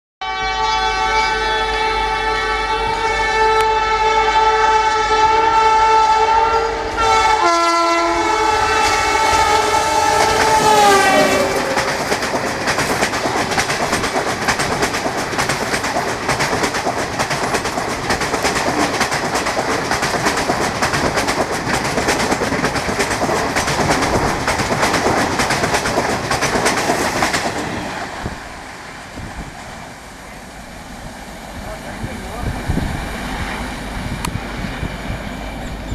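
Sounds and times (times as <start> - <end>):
locomotive horn: 0.2 - 12.2
train wheels clickety-clack: 8.8 - 28.4.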